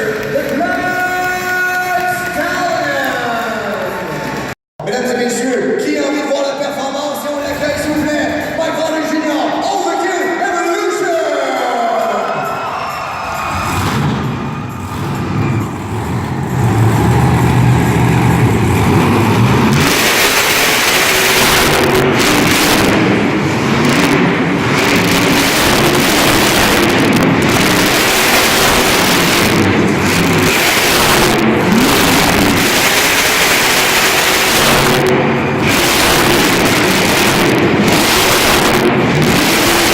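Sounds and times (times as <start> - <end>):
monster truck engine revving: 7.1 - 10.0, 11.6 - 39.9.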